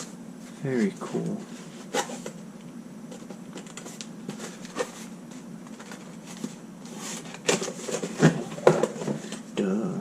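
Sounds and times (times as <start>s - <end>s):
steady low hum: 0.0s - 10.0s
packaging rustling: 3.1s - 9.4s.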